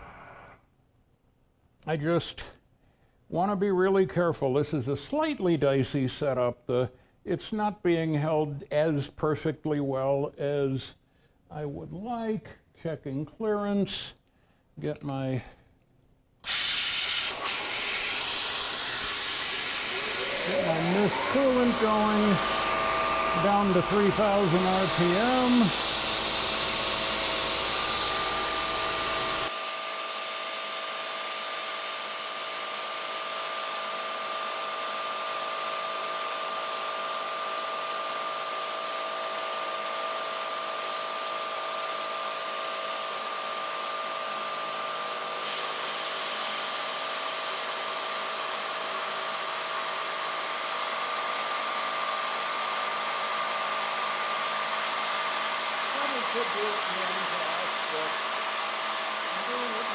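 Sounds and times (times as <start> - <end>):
coolant spray hissing: 16.5 - 25.8
end mill cutting steel: 16.5 - 29.5, 43.0 - 59.9
milling machine spindle whine: 17.3 - 29.5, 43.1 - 59.9.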